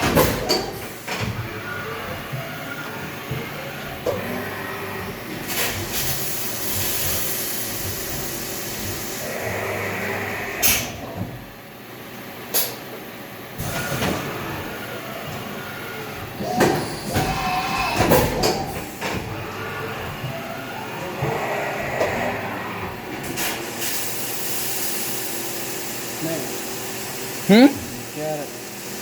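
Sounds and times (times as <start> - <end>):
milling machine hum: 0.0 - 29.0
machine hiss: 5.4 - 11.0, 23.2 - 29.0.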